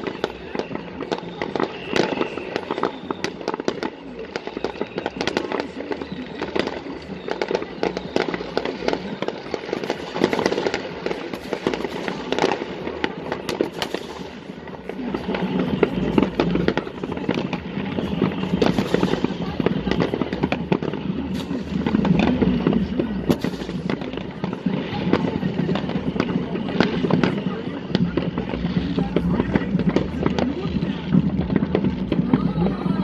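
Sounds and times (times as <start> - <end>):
fireworks bangs and crackling: 0.0 - 33.0.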